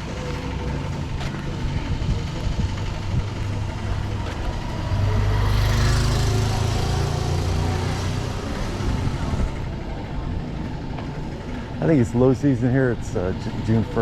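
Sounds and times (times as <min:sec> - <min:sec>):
vehicle rushing past: 0:00.0 - 0:11.4
vehicle engine humming: 0:00.0 - 0:14.0.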